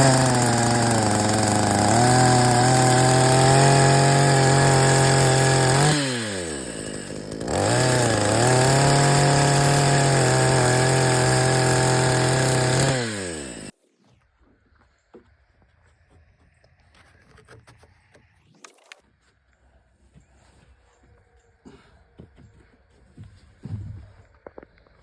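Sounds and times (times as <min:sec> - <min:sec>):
chainsaw engine revving: 0:00.0 - 0:13.7.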